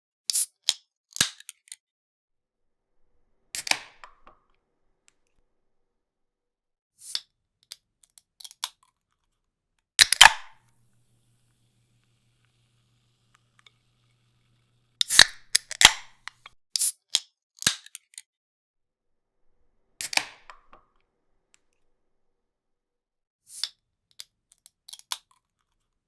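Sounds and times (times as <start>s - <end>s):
drink can tab clicks and pops: 0.3s - 1.8s, 10.0s - 10.6s, 15.0s - 18.2s, 23.6s - 25.4s.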